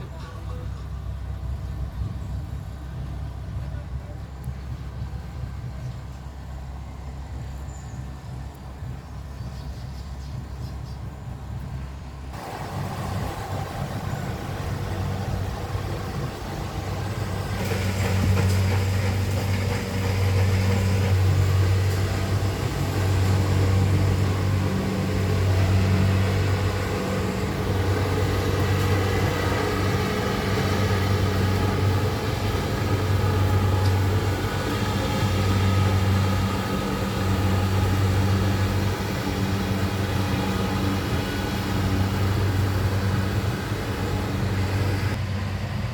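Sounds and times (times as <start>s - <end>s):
harvester engine hum: 0.0s - 45.9s
machinery noise: 12.3s - 45.9s.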